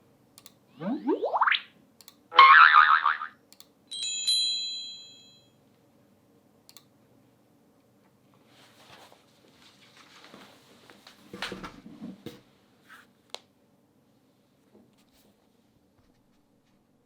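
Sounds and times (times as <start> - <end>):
faint click: 0.4 - 0.6, 6.7 - 6.9
bell-like ringtone chime: 3.9 - 5.6
soft rustling: 8.4 - 11.3.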